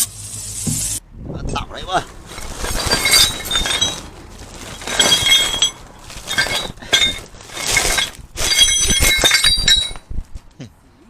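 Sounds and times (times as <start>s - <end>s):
steel parts clinking and rattling: 2.0s - 10.4s.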